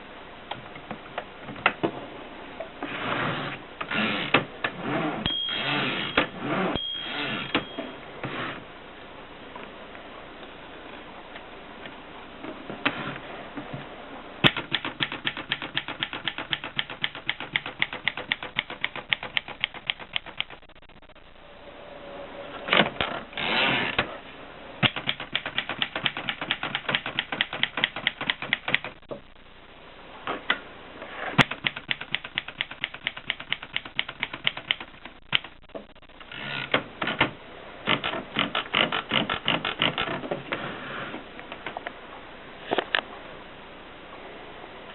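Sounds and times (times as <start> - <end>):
typewriter keystrokes: 14.4 - 20.6, 24.8 - 29.0, 31.4 - 35.6
typewriter mechanical rush: 14.4 - 20.7, 24.8 - 29.0, 31.4 - 35.6, 37.9 - 40.2.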